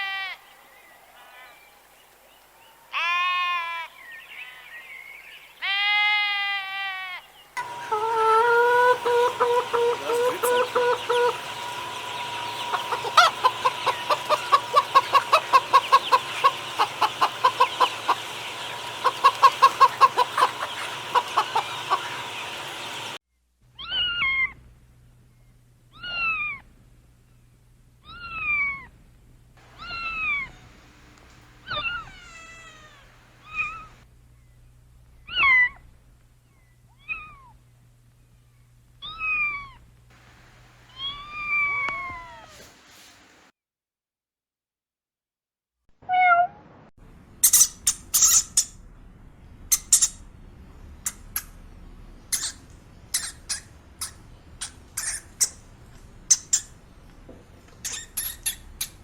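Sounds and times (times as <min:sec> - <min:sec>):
rapid repeated pulses: 0:07.6 - 0:23.2
cat meowing: 0:31.7 - 0:33.9, 0:40.9 - 0:42.6.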